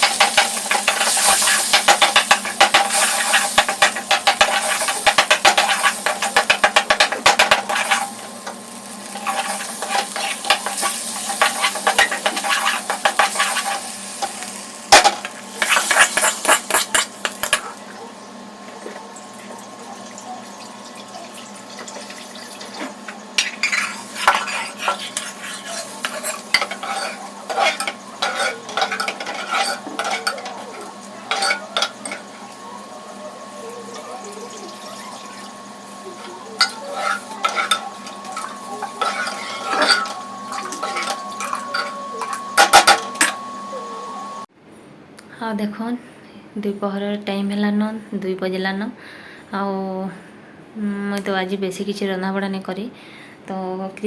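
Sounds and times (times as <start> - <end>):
metal spatula scraping pan: 0.0 - 17.7, 21.8 - 43.9
food sizzling in a pan: 0.0 - 44.5.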